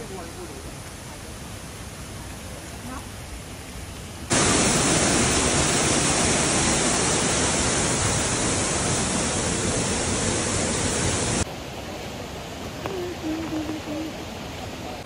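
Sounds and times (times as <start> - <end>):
waterfall rushing: 4.2 - 15.0.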